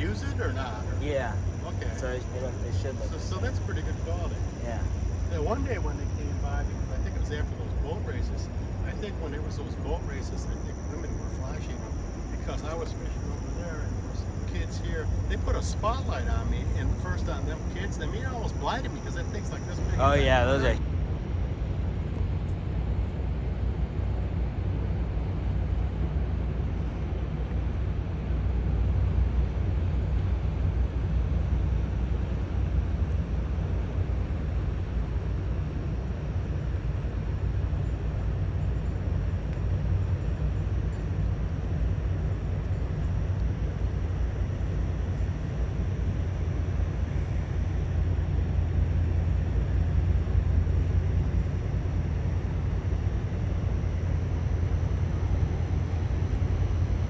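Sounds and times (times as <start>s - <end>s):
ship diesel engines rumbling: 0.0s - 20.8s.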